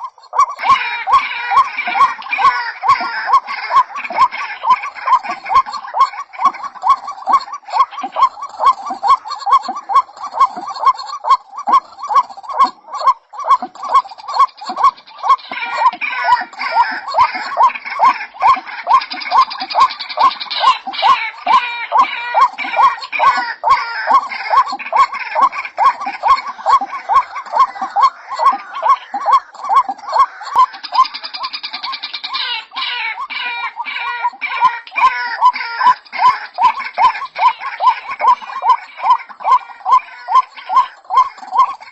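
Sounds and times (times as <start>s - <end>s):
harsh croaking notes: 0.0s - 41.9s
waterhen calling: 0.0s - 41.9s
bird rattling chatter: 2.0s - 18.3s.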